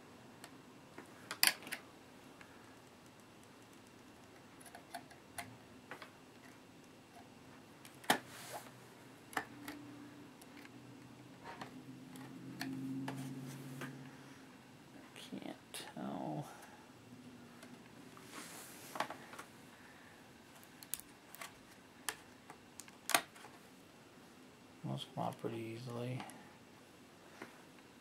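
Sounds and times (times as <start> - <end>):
low hum: 9.4 - 15.3.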